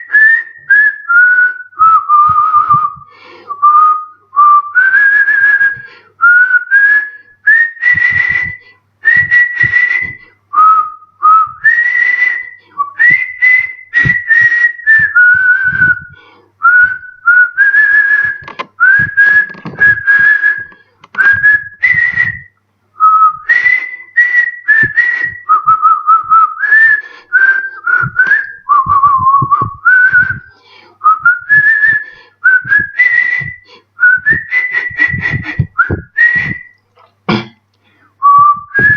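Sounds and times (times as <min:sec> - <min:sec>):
man whistling a melody: 0:00.0 - 0:36.8, 0:37.8 - 0:38.9.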